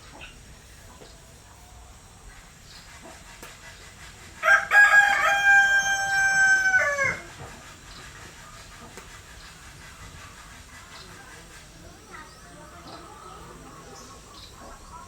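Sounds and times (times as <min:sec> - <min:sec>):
rooster crowing: 0:04.4 - 0:07.2.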